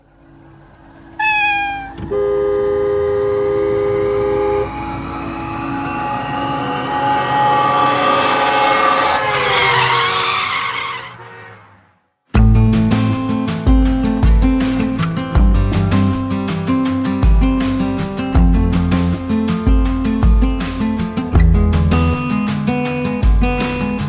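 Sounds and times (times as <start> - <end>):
car engine approaching: 0.0 - 16.6
kitten meowing: 1.2 - 2.0
tyres skidding screech: 1.2 - 2.2, 3.3 - 12.0
car horn two-note blast: 1.2 - 9.2.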